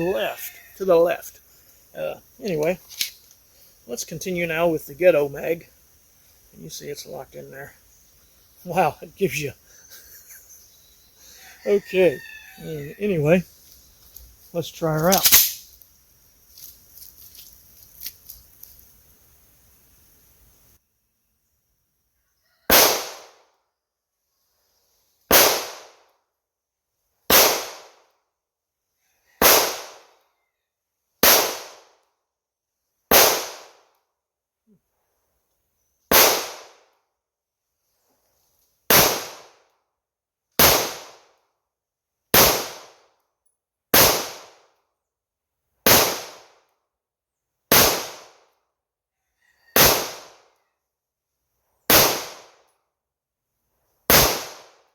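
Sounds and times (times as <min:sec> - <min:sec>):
pistol shots with echo: 0:22.7 - 0:23.4, 0:42.4 - 0:42.9, 0:54.1 - 0:54.7.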